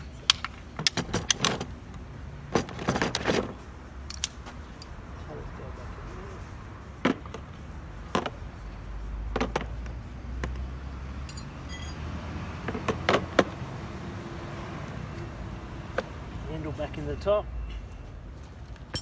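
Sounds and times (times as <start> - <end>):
metallic clinks and knocks: 11.2 - 12.1, 18.8 - 19.0.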